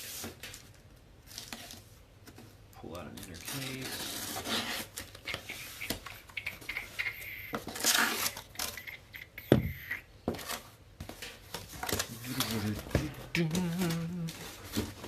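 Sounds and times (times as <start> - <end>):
cardboard tearing and crinkling: 3.1 - 5.2, 7.6 - 8.8, 11.8 - 15.0.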